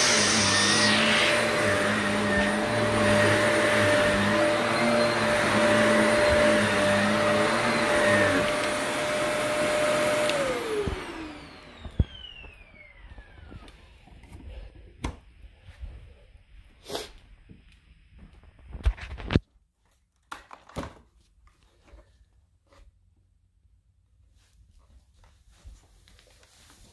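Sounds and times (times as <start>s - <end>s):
vacuum cleaner running: 0.0s - 14.8s.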